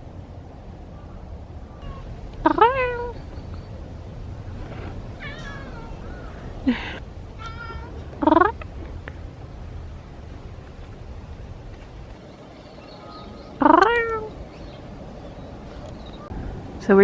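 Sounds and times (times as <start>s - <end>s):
cat meowing: 1.7s - 3.2s, 5.2s - 6.4s, 7.4s - 8.0s, 13.0s - 14.3s.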